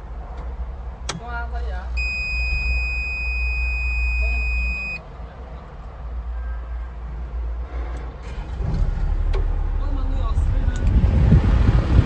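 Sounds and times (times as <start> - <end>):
excavator diesel engine running: 6.3 - 12.0.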